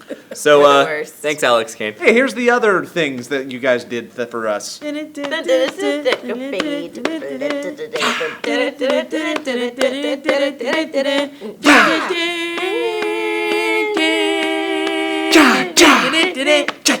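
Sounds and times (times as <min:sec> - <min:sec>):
a cappella singing: 0:04.5 - 0:17.0.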